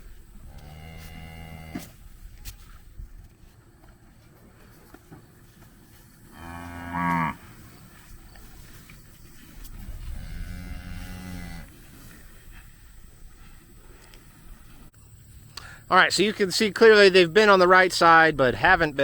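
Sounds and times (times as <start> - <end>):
cattle mooing: 6.3 - 7.6, 10.0 - 11.7.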